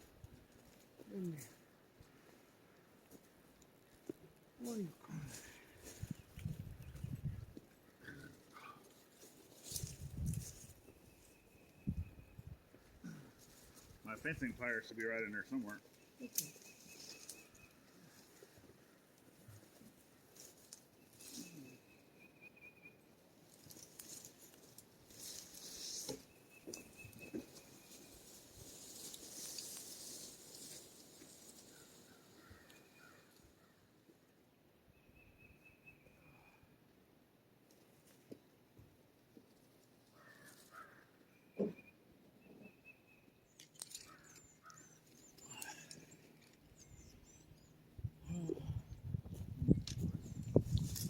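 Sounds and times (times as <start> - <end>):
birds chirping: 9.8 - 18.8, 40.2 - 49.1
faint rustling: 23.4 - 33.8.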